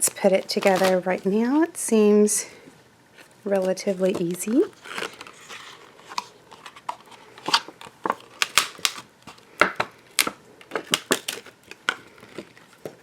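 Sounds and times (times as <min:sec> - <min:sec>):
plastic box clicks and snaps: 0:08.4 - 0:09.0.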